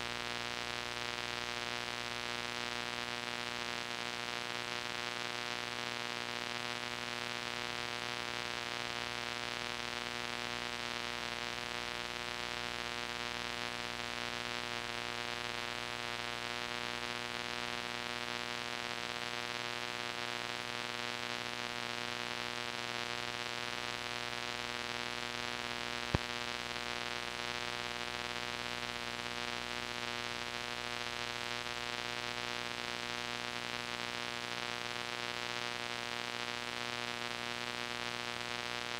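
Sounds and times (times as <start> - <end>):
tape hiss and hum: 23.1 - 32.1.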